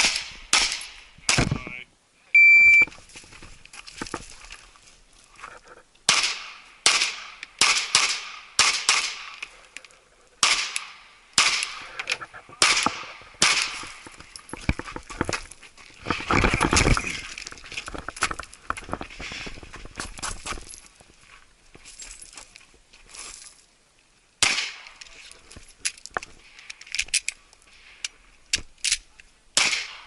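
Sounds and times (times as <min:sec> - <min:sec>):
dense clatter of noise: 0:11.9 - 0:20.9
handgun shots: 0:29.6 - 0:30.0.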